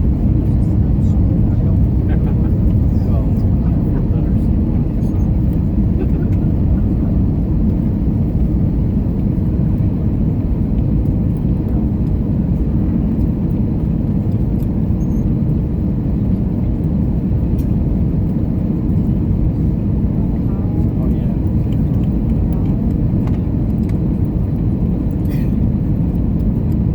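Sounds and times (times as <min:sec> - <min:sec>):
airliner cabin rumble: 0:00.0 - 0:26.9.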